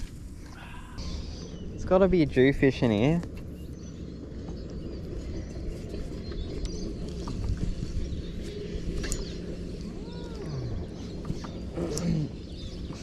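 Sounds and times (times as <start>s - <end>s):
steady low rumble: 0.0s - 13.0s
faint bird chirps: 3.5s - 13.0s.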